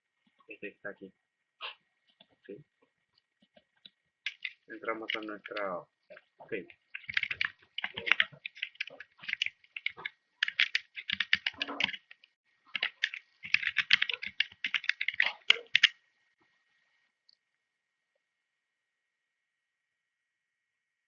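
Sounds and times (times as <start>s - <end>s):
typing on computer keyboard: 4.2s - 5.7s, 6.9s - 16.0s.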